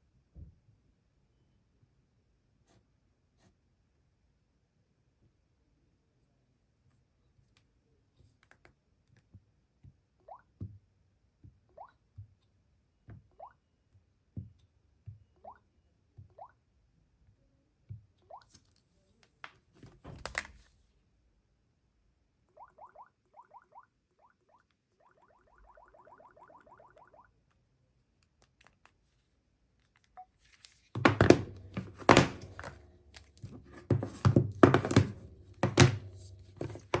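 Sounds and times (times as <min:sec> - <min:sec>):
knocks and thuds ringing: 0:31.0 - 0:32.9, 0:33.5 - 0:37.0.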